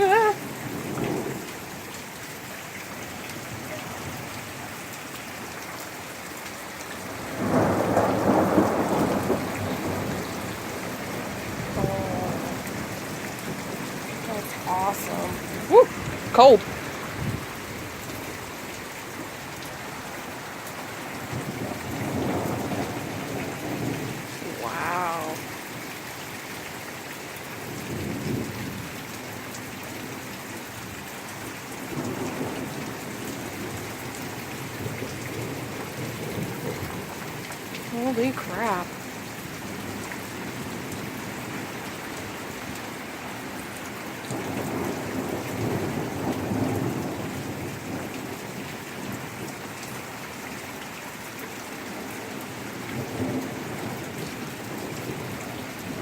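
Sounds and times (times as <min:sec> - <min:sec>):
low rumbles of thunder: 0:00.0 - 0:01.9, 0:07.0 - 0:18.6, 0:21.1 - 0:24.6, 0:27.6 - 0:29.0, 0:31.8 - 0:37.9, 0:44.3 - 0:49.5, 0:52.4 - 0:56.0
heavy rain falling: 0:00.0 - 0:56.0
thunder rumble: 0:07.0 - 0:17.9.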